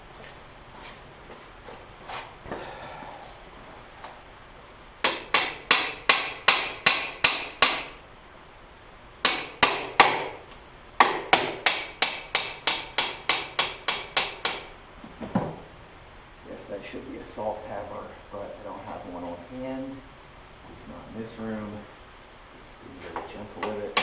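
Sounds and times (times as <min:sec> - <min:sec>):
hammer tapping on metal: 0:05.0 - 0:07.9, 0:09.2 - 0:10.3, 0:11.0 - 0:14.7.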